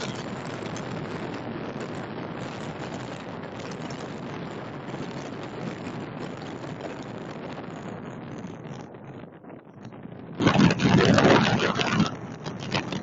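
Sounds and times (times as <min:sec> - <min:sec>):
sea surf washing on shore: 0:00.0 - 0:06.0, 0:10.4 - 0:13.0
wind: 0:00.0 - 0:13.0.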